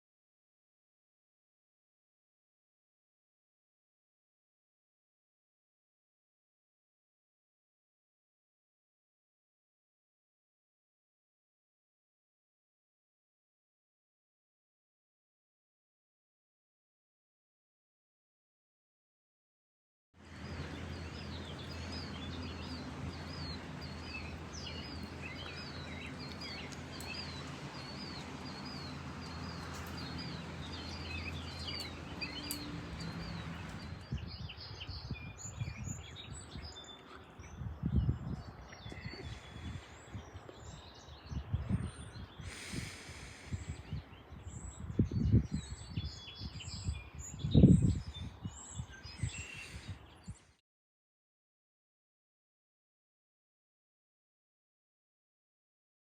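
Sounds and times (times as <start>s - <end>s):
low rumbling bursts: 20.2s - 35.1s
songbirds chirping: 20.2s - 50.6s.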